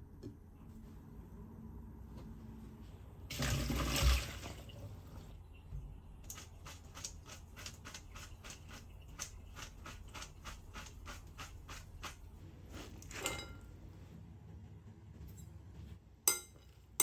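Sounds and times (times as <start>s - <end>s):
rapid kitchen scraping strokes: 6.2s - 13.6s.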